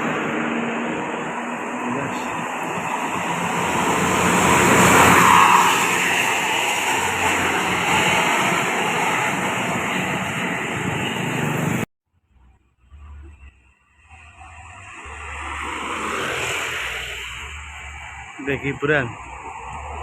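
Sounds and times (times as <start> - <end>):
bus passing close by: 0.0 - 11.9, 14.0 - 20.0.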